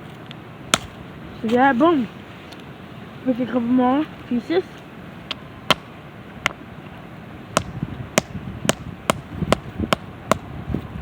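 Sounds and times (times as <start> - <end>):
rock striking rock: 0.7 - 1.0, 5.7 - 6.6, 7.6 - 10.5.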